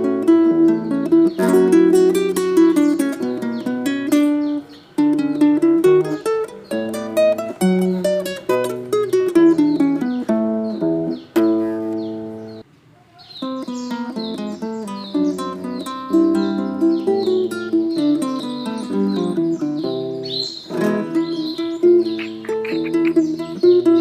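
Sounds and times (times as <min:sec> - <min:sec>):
plucked acoustic guitar melody: 0:00.0 - 0:12.7, 0:13.4 - 0:24.0.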